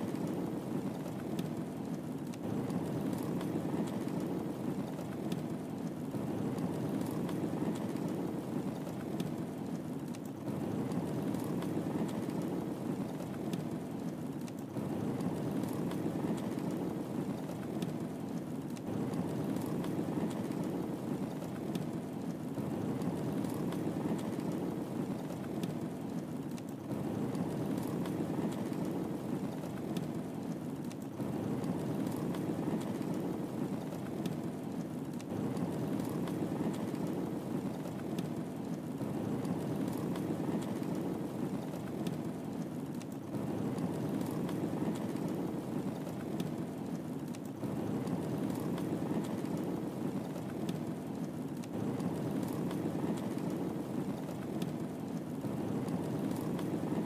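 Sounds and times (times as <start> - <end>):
faint fire crackles: 0.0 - 57.0
fire low rumble: 0.0 - 57.0.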